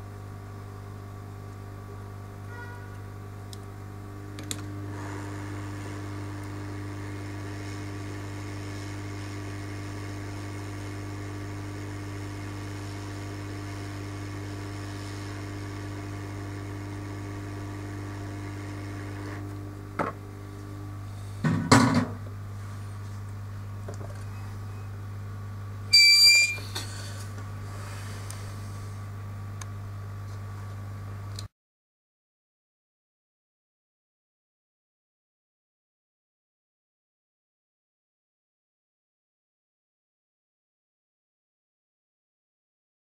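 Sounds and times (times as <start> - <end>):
small fan motor running: 0.0 - 21.5
low mains hum: 0.0 - 31.5.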